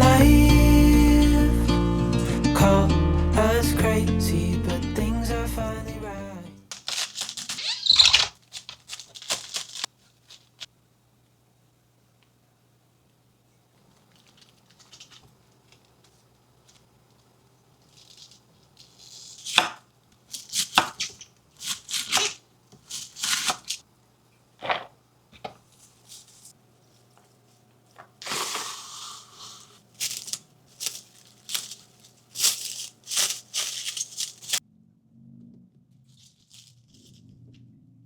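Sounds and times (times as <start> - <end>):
cabbage leaves crunching and tearing: 6.7 - 10.5, 20.3 - 23.8, 28.2 - 34.6
knife chopping cabbage: 19.0 - 19.8, 20.4 - 23.8.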